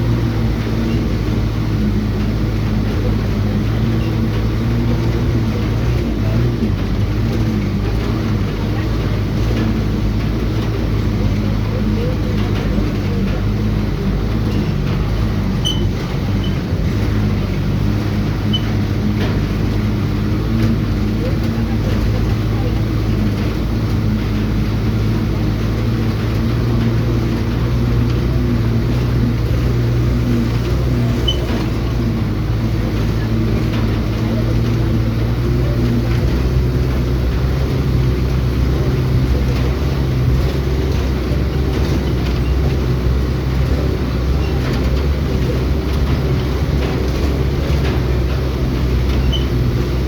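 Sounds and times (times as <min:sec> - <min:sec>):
road noise: 0:00.0 - 0:50.0
vehicle engine drone: 0:00.0 - 0:50.0.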